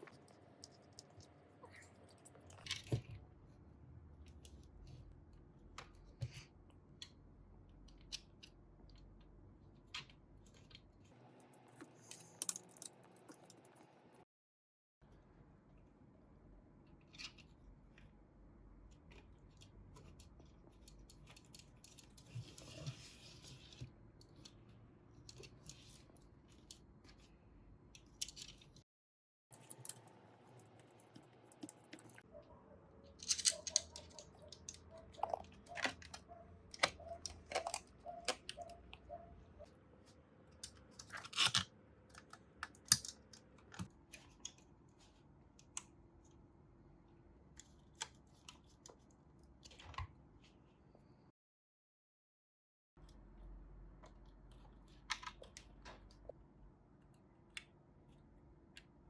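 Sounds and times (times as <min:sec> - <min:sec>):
small parts clicking and tapping: 0:29.5 - 0:32.3, 0:33.1 - 0:39.0.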